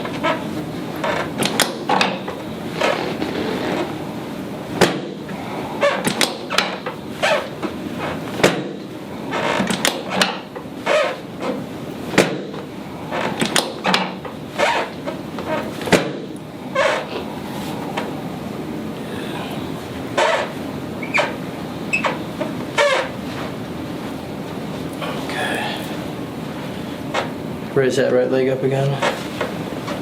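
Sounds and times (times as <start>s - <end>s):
chiropractic table clacking: 0.0s - 4.0s, 4.8s - 17.3s, 20.1s - 23.5s, 27.1s - 27.4s.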